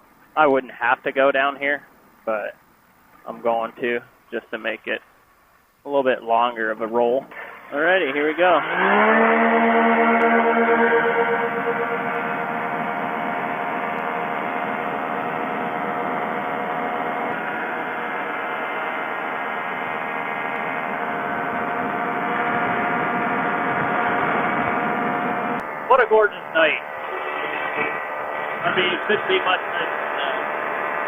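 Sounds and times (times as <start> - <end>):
ultralight aircraft engine droning: 6.8 - 31.0.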